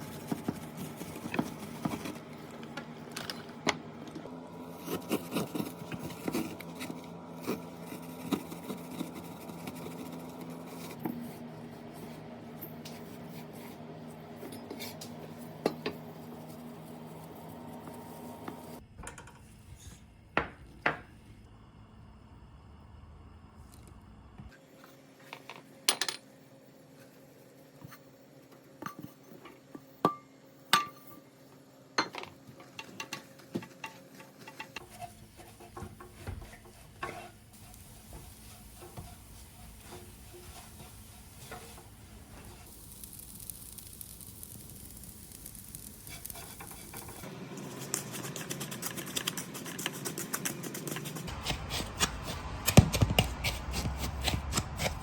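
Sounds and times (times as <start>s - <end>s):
utensil scraping a pan: 34.2s - 42.7s
pastry sizzling in butter: 34.8s - 52.1s.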